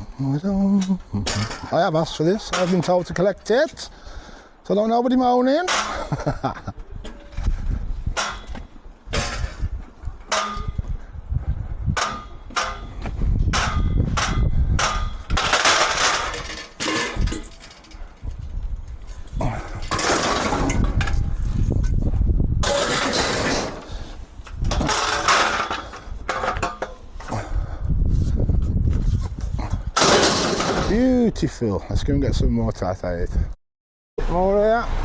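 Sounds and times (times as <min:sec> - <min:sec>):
scrap metal clanking: 0:01.2 - 0:03.2, 0:05.6 - 0:11.0, 0:12.0 - 0:18.2, 0:19.1 - 0:31.0.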